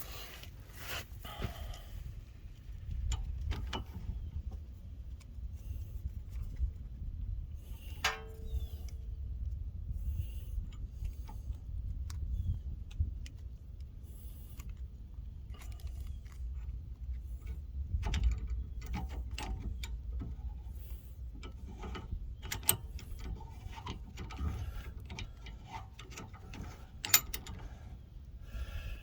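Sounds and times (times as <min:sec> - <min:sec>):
hand tools clicking and clanking: 0:15.5 - 0:28.0.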